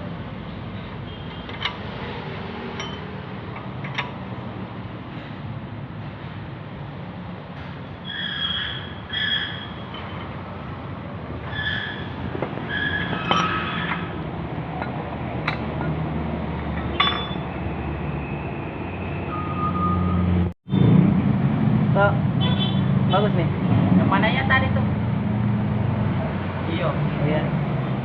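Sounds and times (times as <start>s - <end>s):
metal clinking: 1.2s - 1.9s, 2.6s - 4.2s, 9.7s - 10.4s, 12.4s - 14.2s, 16.7s - 17.5s.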